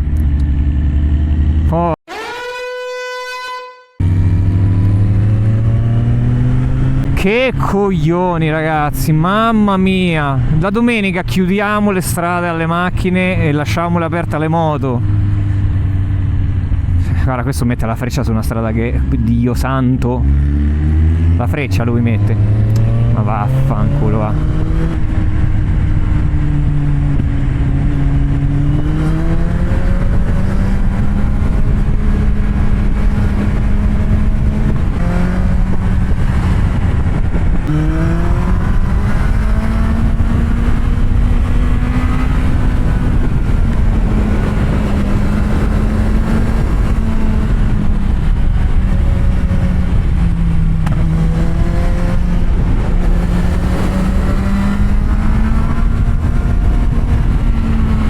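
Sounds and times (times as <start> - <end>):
motorcycle engine revving: 0.0 - 10.7, 13.4 - 17.1, 20.0 - 58.0
wind on microphone: 22.1 - 58.0.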